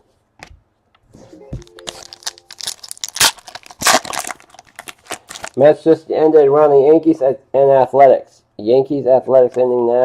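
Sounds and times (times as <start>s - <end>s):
foil wrapper crinkling: 1.6s - 5.6s.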